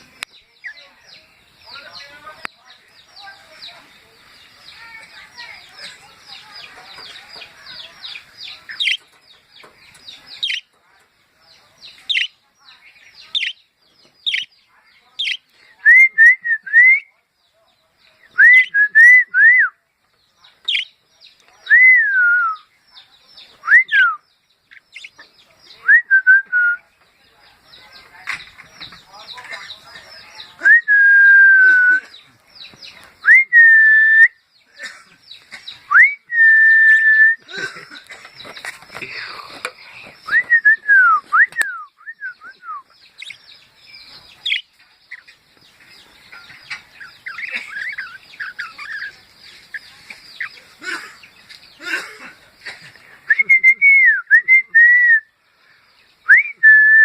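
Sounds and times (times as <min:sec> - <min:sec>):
budgerigar chirps and clicks: 0:05.7 - 0:11.1, 0:13.2 - 0:14.5, 0:20.5 - 0:21.6, 0:44.4 - 0:51.6
whistled notes: 0:18.4 - 0:19.8, 0:33.2 - 0:34.4, 0:35.9 - 0:37.4, 0:40.2 - 0:42.9, 0:53.3 - 0:55.3, 0:56.3 - 0:57.0.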